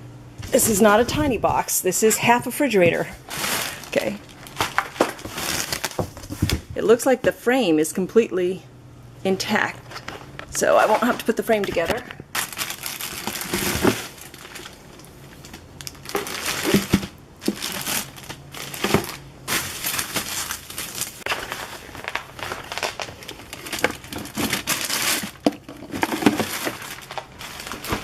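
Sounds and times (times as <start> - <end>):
packaging crinkling: 3.2 - 6.6, 10.0 - 28.0.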